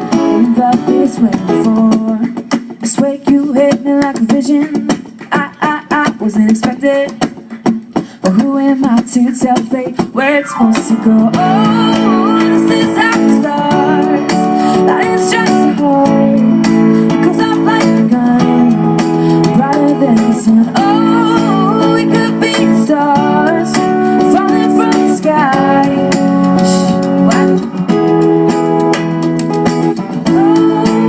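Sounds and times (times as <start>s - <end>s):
woman singing: 0.0s - 7.4s, 8.2s - 28.6s, 30.1s - 31.0s
acoustic guitar strumming chords: 10.0s - 31.0s.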